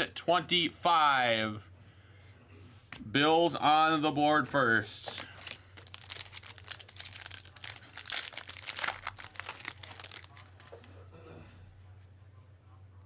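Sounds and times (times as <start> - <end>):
foil wrapper tearing and crinkling: 5.1 - 10.9.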